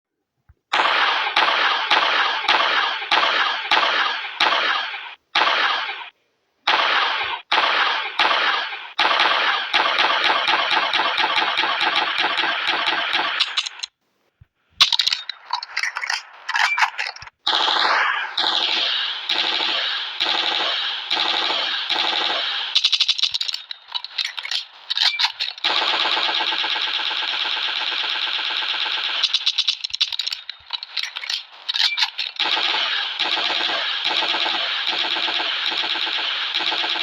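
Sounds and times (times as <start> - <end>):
automatic rifle bursts: 14.8 - 37.0.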